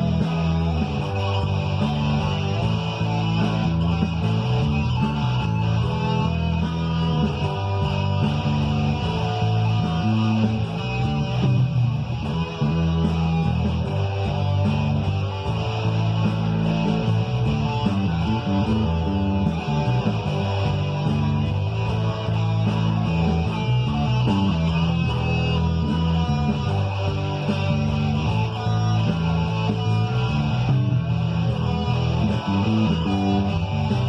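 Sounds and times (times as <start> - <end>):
electric guitar: 0.0 - 34.0
rock backing track: 0.0 - 34.0.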